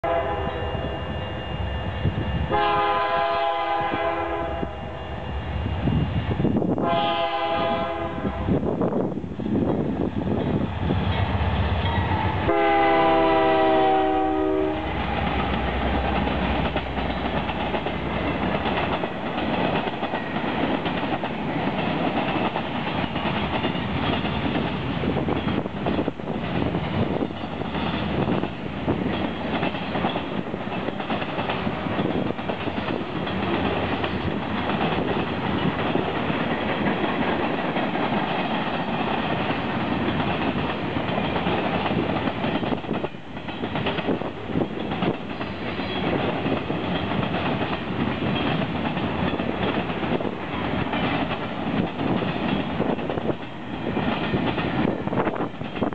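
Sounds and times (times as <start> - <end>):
train air horn chord: 0.0 - 1.6, 2.5 - 5.2, 6.8 - 8.6, 12.4 - 15.0
train wheels clattering on rails: 5.6 - 55.9.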